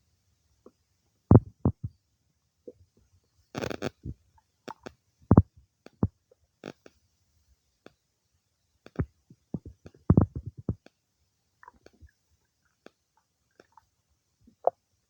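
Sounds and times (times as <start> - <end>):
stomach gurgling: 1.3 - 2.0, 3.6 - 6.8, 8.9 - 10.9, 11.6 - 13.9, 14.5 - 14.8.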